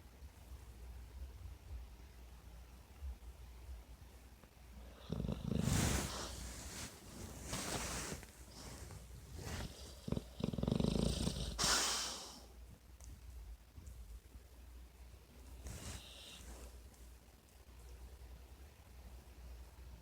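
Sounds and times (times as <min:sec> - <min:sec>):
dog snoring: 0:04.9 - 0:12.2.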